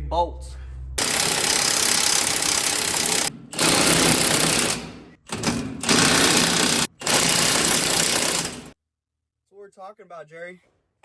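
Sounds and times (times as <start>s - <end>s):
impact wrench hammering bolts: 1.0s - 8.8s.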